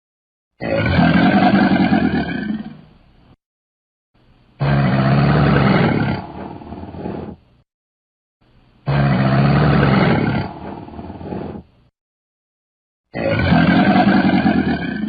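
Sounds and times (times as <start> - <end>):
crocodile low calls: 0.6 - 2.8, 4.6 - 7.4, 8.8 - 11.7, 13.1 - 15.0.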